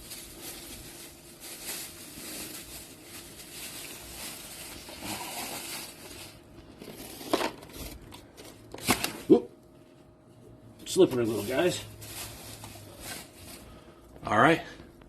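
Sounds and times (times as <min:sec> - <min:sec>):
wet fish handling rustles: 0:00.0 - 0:06.5, 0:11.0 - 0:13.9.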